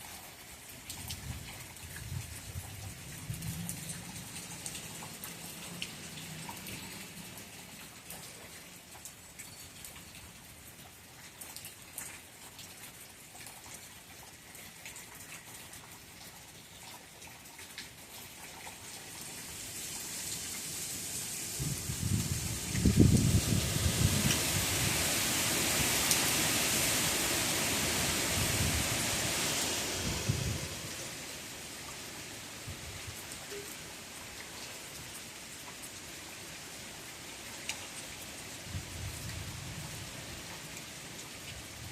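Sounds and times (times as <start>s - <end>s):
rain drops ticking: 0.0s - 41.9s
wind hiss: 18.8s - 41.9s.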